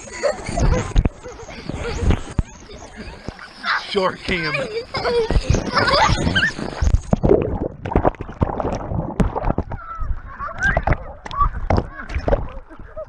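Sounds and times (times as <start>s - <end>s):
muffled underwater water sloshing: 0.0s - 13.0s
thumps and splashes: 4.2s - 12.8s.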